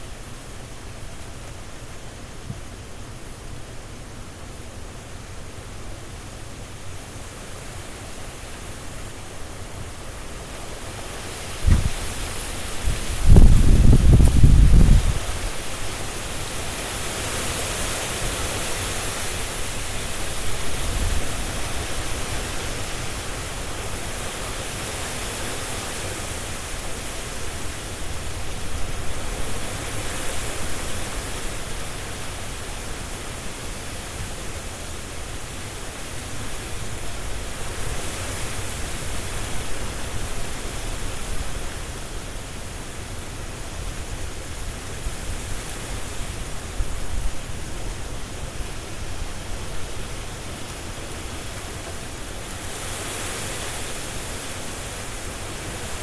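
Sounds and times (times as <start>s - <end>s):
strong wind through trees: 0.0s - 56.0s.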